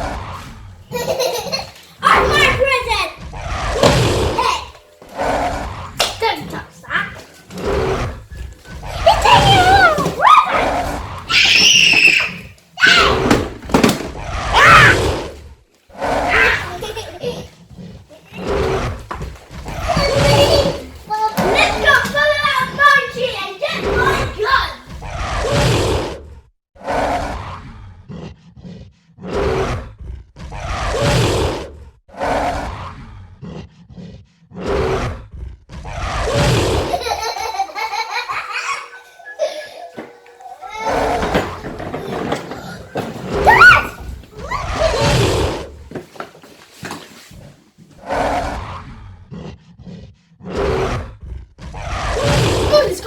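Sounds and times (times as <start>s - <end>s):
gorilla-like roars: 0.0s - 1.4s, 2.0s - 23.0s, 23.7s - 39.6s, 40.8s - 45.9s, 48.0s - 53.0s
children screaming: 2.0s - 3.0s, 8.9s - 13.2s, 14.5s - 15.0s, 16.3s - 16.9s, 19.8s - 24.8s, 37.0s - 45.2s
steady tones: 36.8s - 45.0s
grunts: 40.9s - 45.8s.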